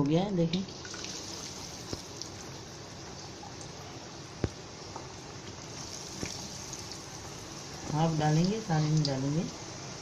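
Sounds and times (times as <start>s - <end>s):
oil popping: 0.8s - 3.8s, 4.4s - 7.9s
hot oil hissing: 0.8s - 3.9s, 5.6s - 10.0s.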